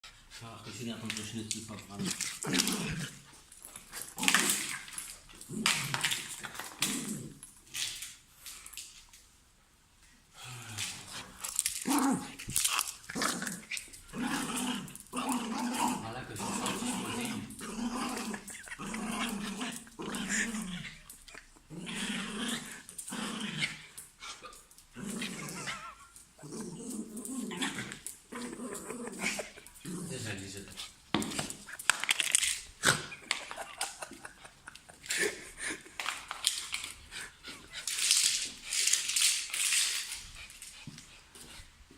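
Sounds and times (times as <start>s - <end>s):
dog growling: 1.1s - 7.4s, 10.4s - 31.8s.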